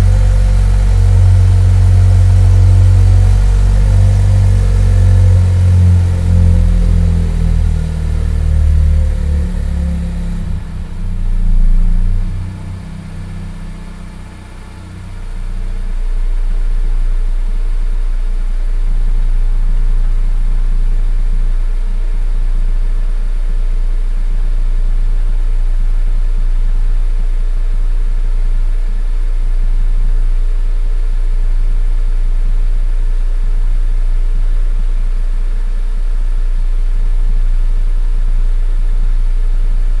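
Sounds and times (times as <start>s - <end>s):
car engine revving and idling: 0.0s - 25.4s.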